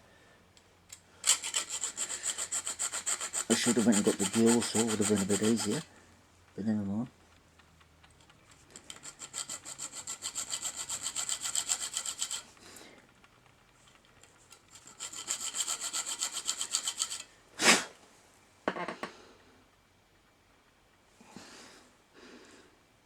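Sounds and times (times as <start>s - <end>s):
hand saw cutting metal: 1.2s - 5.9s, 8.8s - 12.6s, 14.5s - 17.8s.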